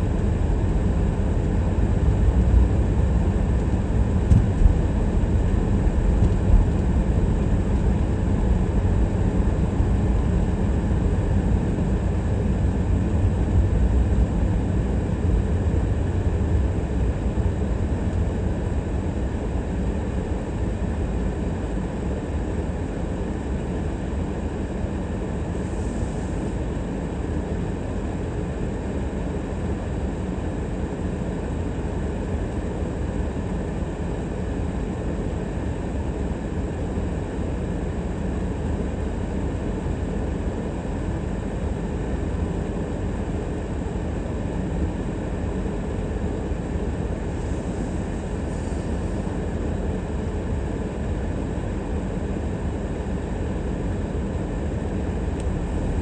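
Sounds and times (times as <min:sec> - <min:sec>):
car driving: 0:02.1 - 0:10.1, 0:55.1 - 0:56.0.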